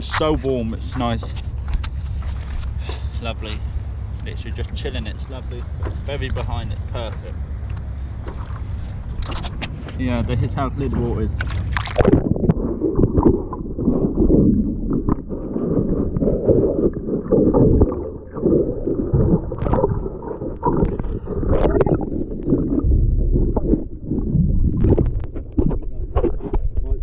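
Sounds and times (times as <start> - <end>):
water sloshing against a board: 0.0 - 27.0
small splashes: 7.2 - 9.9, 10.8 - 22.9.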